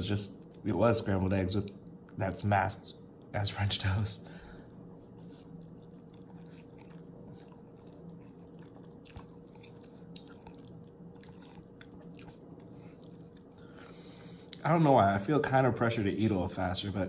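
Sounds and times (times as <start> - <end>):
low steady hum: 0.0 - 17.0
chewing noodles: 4.5 - 14.6.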